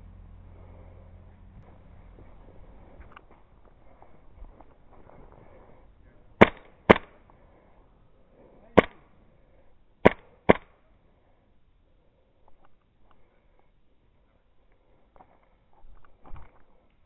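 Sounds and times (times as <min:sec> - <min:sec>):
airsoft gun shots: 0:06.4 - 0:07.2, 0:08.8 - 0:09.1, 0:10.0 - 0:10.8.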